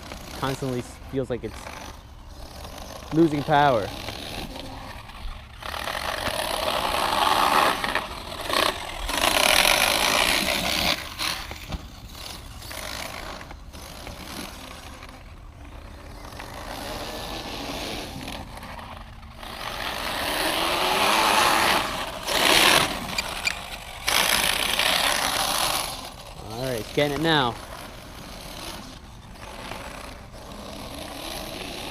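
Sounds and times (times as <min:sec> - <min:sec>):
electric toy truck motor whining: 0:00.0 - 0:31.9
man talking: 0:00.4 - 0:01.7, 0:03.1 - 0:04.0, 0:26.4 - 0:27.6.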